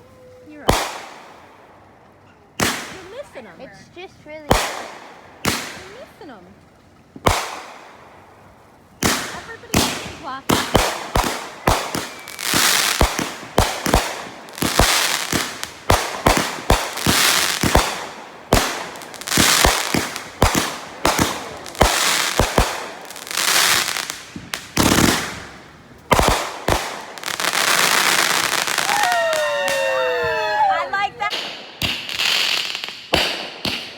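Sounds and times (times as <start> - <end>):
fireworks bursting: 0.0 - 33.9.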